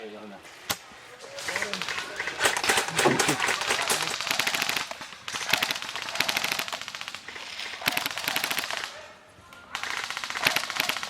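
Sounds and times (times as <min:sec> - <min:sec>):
airsoft gun firing full auto: 0:01.4 - 0:08.9, 0:09.7 - 0:11.0.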